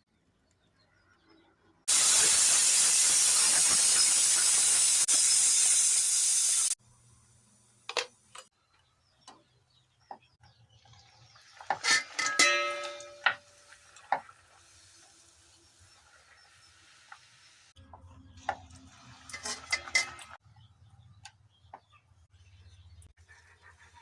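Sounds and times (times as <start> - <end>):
cooking sizzle hiss: 1.9 - 8.0, 11.5 - 17.8
steel cookware clanging: 11.6 - 13.7, 18.4 - 20.4
metal utensils clicking: 11.7 - 13.5, 19.3 - 20.4.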